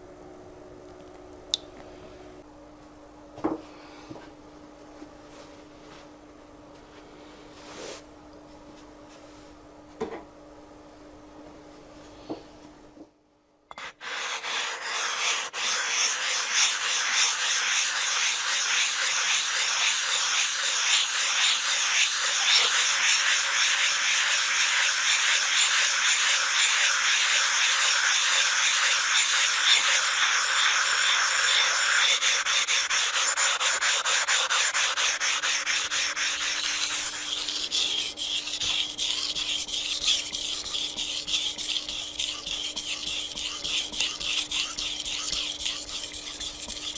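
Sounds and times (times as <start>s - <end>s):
knife stroked across whetstone: 13.7s - 46.9s
rubbing on a whetstone: 13.8s - 46.9s.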